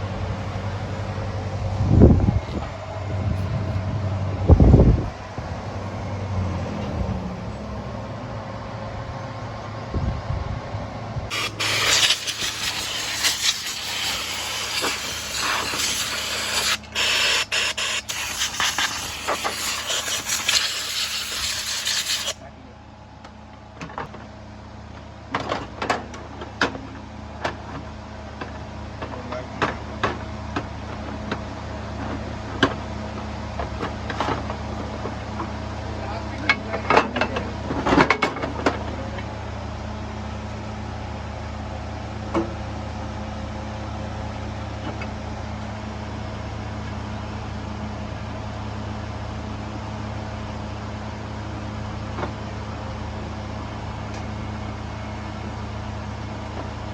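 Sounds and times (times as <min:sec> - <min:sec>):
steady low hum: 0:00.0 - 0:25.3
pressurised spraying hiss: 0:11.3 - 0:22.4.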